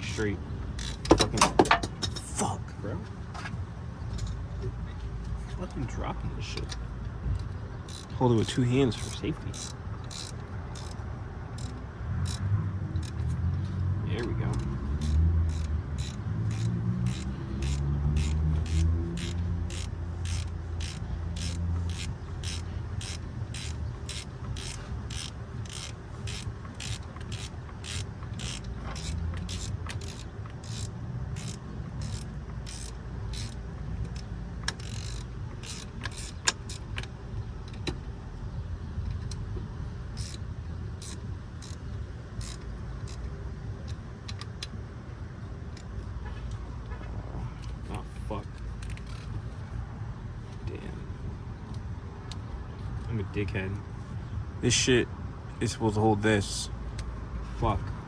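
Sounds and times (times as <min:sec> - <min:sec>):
ratchet wrench clicking: 0:00.0 - 0:02.2, 0:06.6 - 0:38.0, 0:39.0 - 0:44.9, 0:47.6 - 0:49.6.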